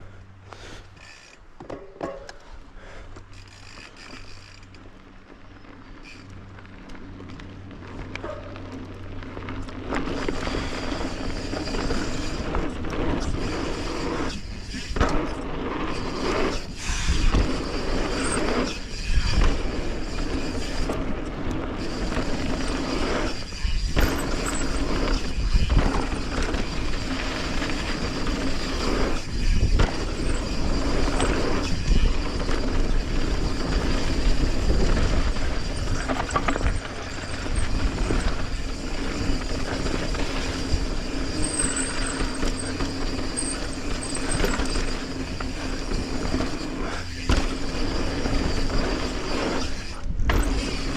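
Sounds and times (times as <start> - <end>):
bike rattling over bumps: 0.6 - 50.9
tyres rolling over dirt: 3.3 - 50.9
wind on microphone: 21.8 - 46.6.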